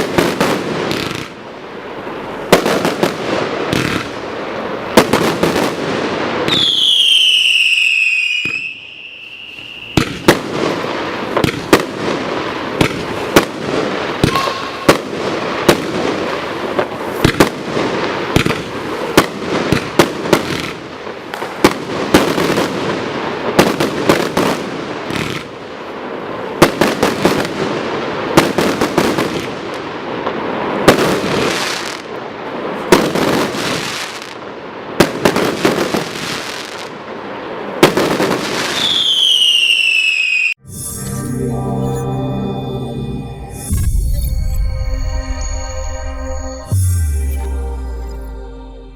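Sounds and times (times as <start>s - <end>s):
firework bangs: 0.0s - 40.6s
firework crackling: 0.0s - 41.5s
firework whistle: 6.4s - 11.8s, 12.8s - 17.5s, 38.5s - 48.9s.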